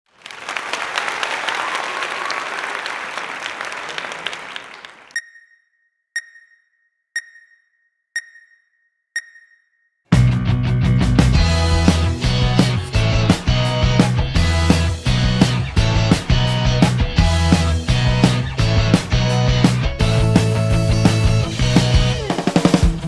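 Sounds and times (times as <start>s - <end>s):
music with strong bass line: 10.2s - 23.0s.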